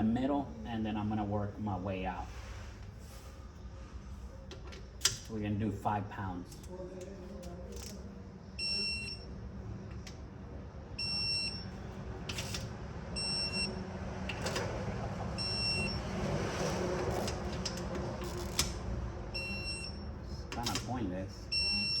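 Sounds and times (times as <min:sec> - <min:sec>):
torque wrench beeping: 0:11.0 - 0:11.7, 0:15.4 - 0:16.0, 0:19.4 - 0:20.8, 0:21.5 - 0:22.0.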